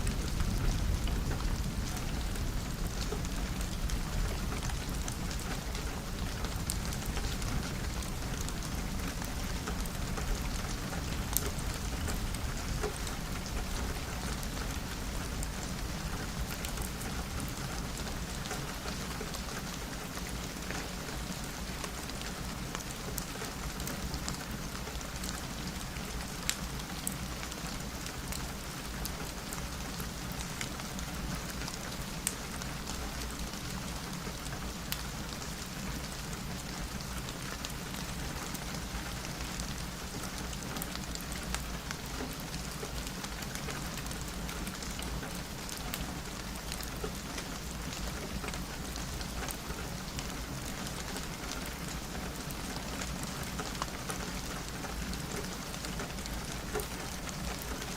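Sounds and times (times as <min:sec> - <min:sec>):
rain on window glass: 0:00.0 - 0:57.9.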